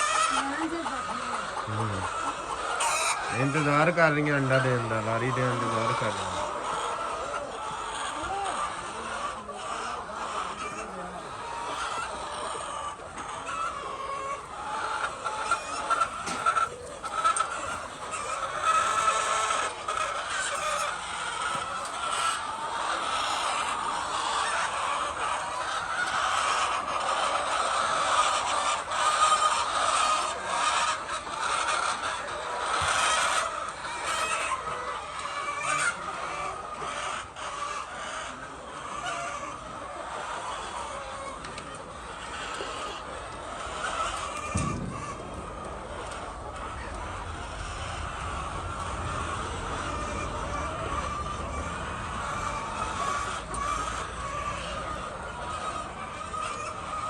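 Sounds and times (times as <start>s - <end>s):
hens clucking: 0.0s - 57.0s.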